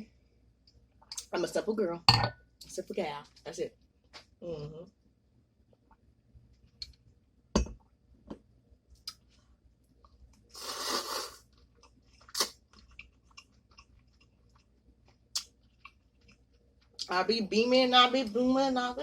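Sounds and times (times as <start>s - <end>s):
person chewing with crunches: 9.0s - 17.1s.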